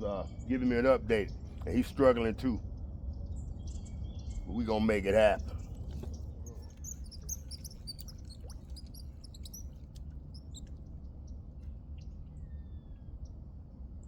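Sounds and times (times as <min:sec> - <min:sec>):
small birds chirping: 0:03.6 - 0:12.1
thin falling whistles: 0:06.8 - 0:10.7.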